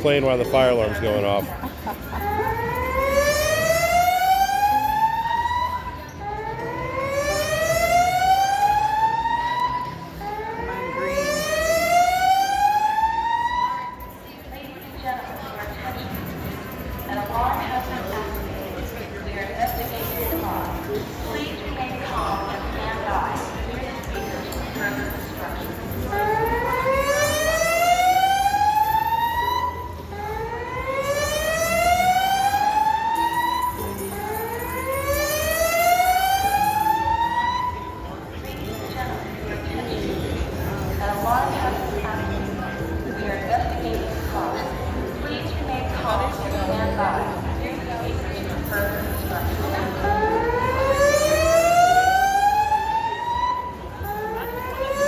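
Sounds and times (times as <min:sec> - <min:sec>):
fire alarm rising whoop tone: 0:02.2 - 0:14.1, 0:26.1 - 0:38.0, 0:50.0 - 0:55.0.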